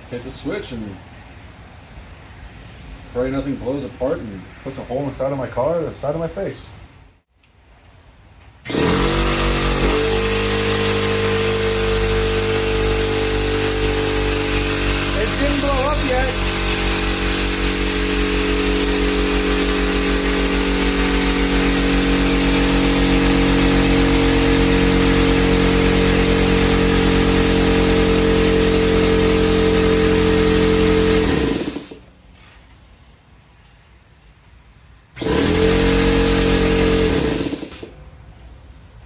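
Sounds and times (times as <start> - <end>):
air compressor running: 8.6 - 32.1, 35.2 - 38.1.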